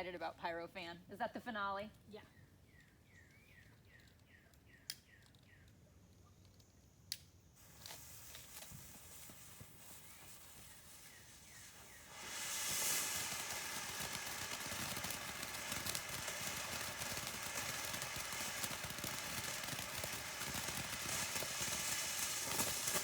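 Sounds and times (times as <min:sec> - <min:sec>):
firework fountain spraying hiss: 0:07.5 - 0:23.0.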